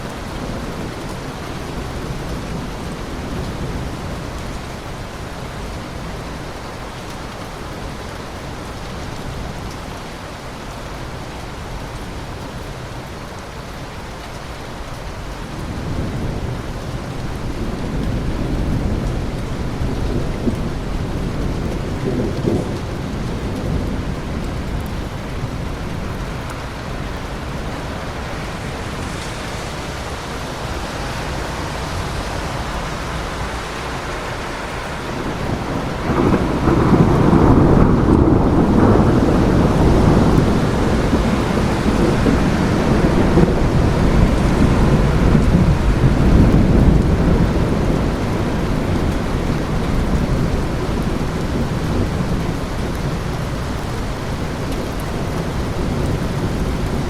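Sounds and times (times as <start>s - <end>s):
steady rain: 0.0s - 57.0s
rolling thunder: 15.7s - 54.6s.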